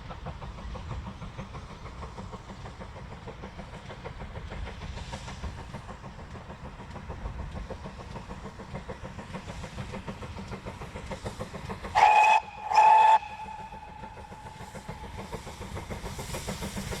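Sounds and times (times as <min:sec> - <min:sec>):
steam train rumbling: 0:00.0 - 0:17.0
steam whistle blasts: 0:11.9 - 0:14.2.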